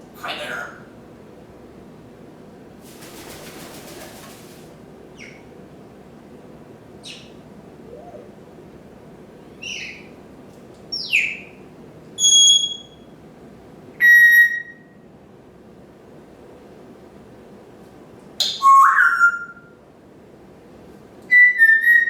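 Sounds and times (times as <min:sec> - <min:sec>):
parrot chirping and whistling: 0:12.2 - 0:12.9.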